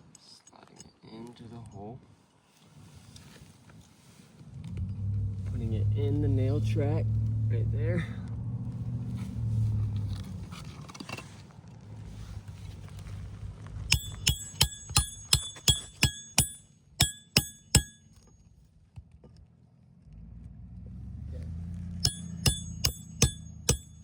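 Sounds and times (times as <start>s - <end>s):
hammer striking metal tool: 13.9s - 18.4s, 22.0s - 24.0s.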